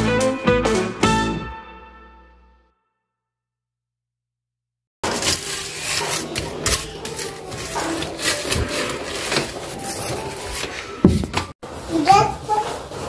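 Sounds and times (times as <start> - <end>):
rubbing and scrubbing: 5.0 - 13.0.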